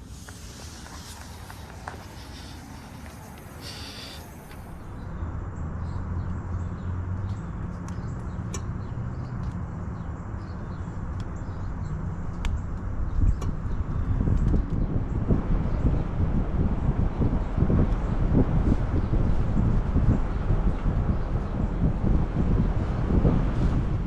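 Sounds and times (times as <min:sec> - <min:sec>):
heat pump outdoor unit humming: 0:00.0 - 0:05.3.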